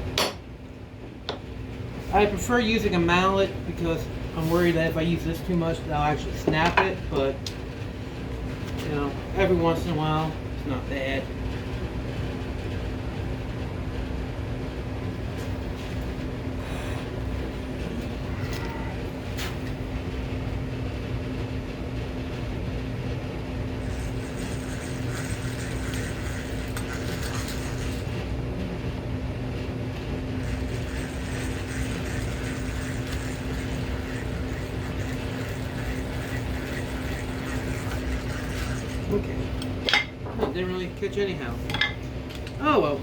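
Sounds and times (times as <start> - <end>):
steady low hum: 0.0 - 43.0.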